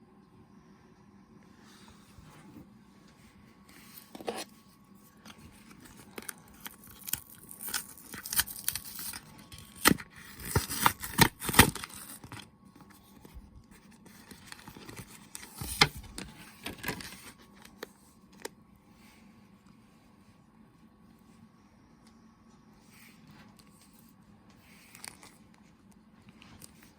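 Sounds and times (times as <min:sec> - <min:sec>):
blister packaging crackling and tearing: 0:05.3 - 0:12.5.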